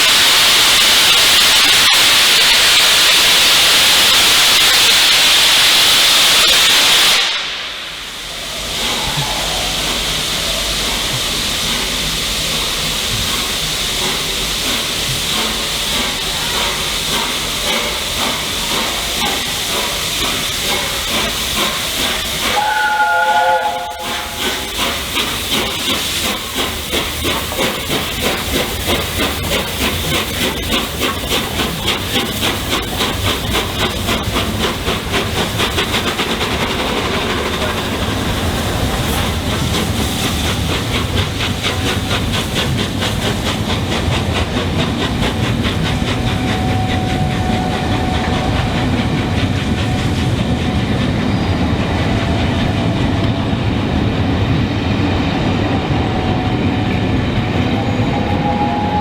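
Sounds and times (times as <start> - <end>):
steam hissing: 0.0 - 59.0
steam locomotive exhaust beats: 0.0 - 59.0
locomotive whistle blast: 22.4 - 25.1, 46.3 - 50.4, 57.8 - 59.0.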